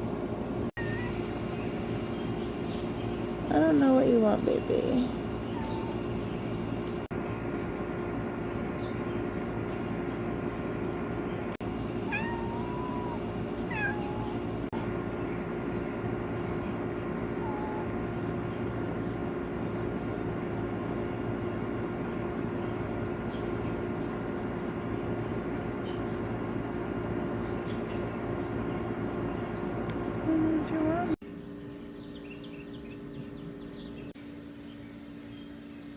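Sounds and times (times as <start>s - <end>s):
steady background hum: 0.0s - 35.9s
cat meowing: 0.8s - 1.2s, 5.5s - 6.0s, 12.1s - 14.5s
faint bird chirps: 0.8s - 8.2s, 11.8s - 18.3s.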